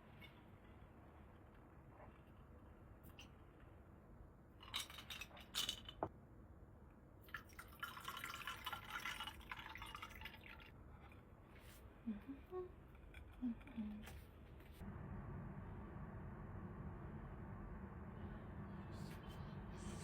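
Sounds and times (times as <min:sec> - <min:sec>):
liquid being poured: 0:07.3 - 0:10.8.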